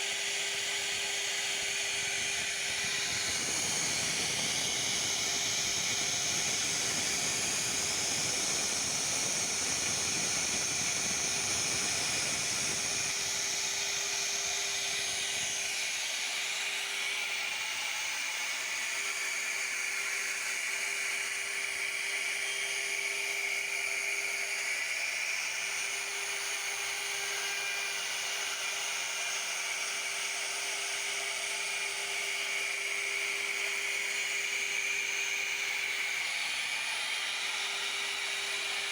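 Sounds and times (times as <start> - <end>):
router spindle whining: 20.2 - 38.9.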